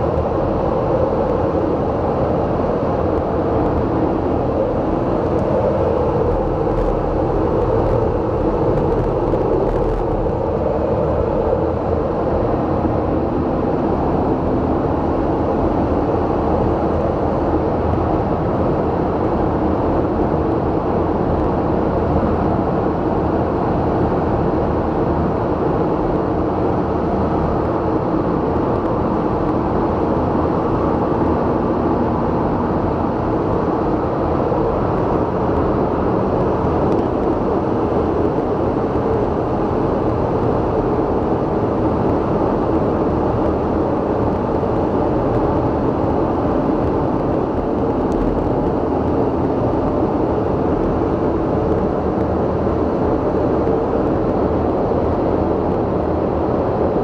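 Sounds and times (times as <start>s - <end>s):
vehicle rumble: 0.0s - 14.7s.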